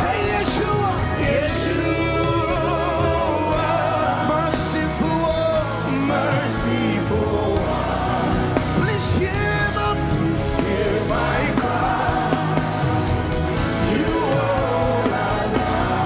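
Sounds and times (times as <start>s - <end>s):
band accompaniment: 0.0s - 16.0s
person singing gospel: 0.0s - 16.0s.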